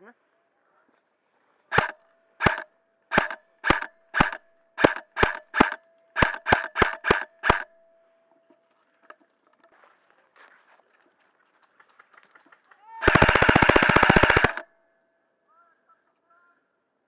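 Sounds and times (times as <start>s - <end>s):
airsoft gun shots: 1.7s - 7.7s, 13.0s - 14.6s.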